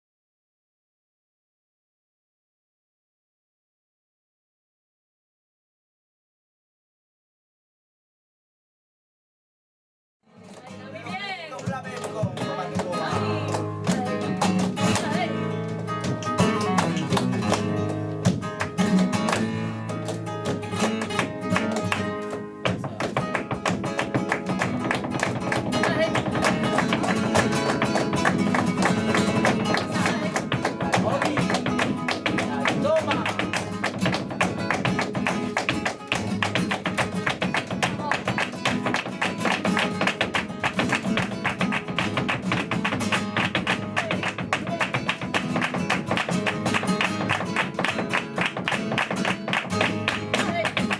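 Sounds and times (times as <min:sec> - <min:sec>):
flamenco guitar: 0:10.3 - 0:50.9
rapid sharp percussive strikes: 0:20.4 - 0:50.9.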